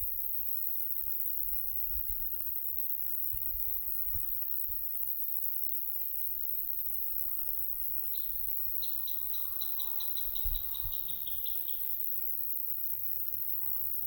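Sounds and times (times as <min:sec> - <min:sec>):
songbird chirping: 0:08.1 - 0:12.0.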